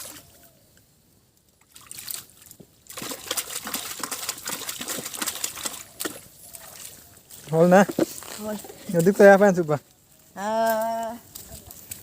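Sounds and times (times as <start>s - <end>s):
water splashing and sloshing: 0.0s - 0.6s, 1.4s - 10.0s.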